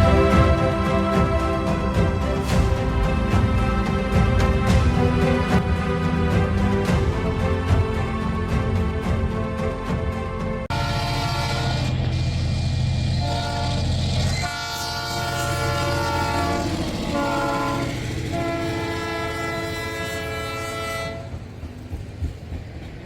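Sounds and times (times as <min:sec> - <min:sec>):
train horn blasts: 0:00.0 - 0:08.3, 0:10.7 - 0:12.0, 0:13.2 - 0:21.4
locomotive rumble: 0:00.0 - 0:23.0.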